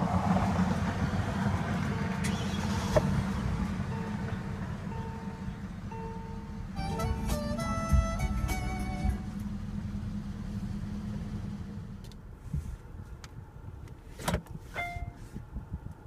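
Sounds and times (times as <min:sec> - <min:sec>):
low car rumble: 0:00.0 - 0:16.0
car electronic chime: 0:03.8 - 0:09.3, 0:14.8 - 0:15.2.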